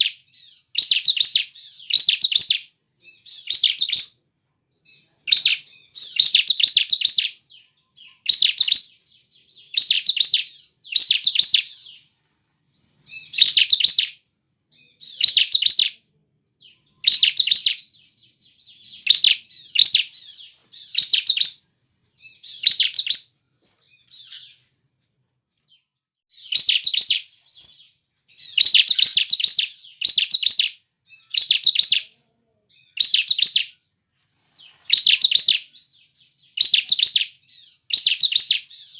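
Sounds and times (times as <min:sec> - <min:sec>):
faint bird trilling: 0:00.0 - 0:04.2, 0:04.9 - 0:12.1, 0:13.0 - 0:14.2, 0:16.6 - 0:21.6, 0:22.2 - 0:24.7, 0:26.3 - 0:33.8
bird chattering song: 0:00.0 - 0:12.2, 0:12.8 - 0:38.9.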